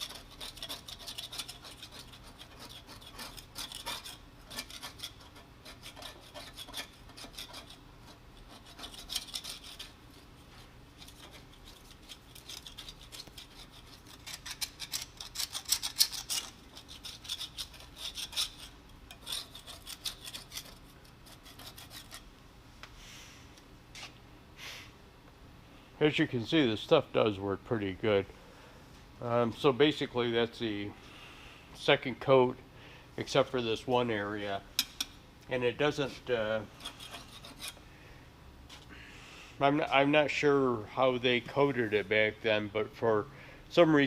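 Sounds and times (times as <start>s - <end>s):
tool scraping paint off metal: 0.0s - 10.0s, 11.0s - 22.2s, 36.8s - 37.8s.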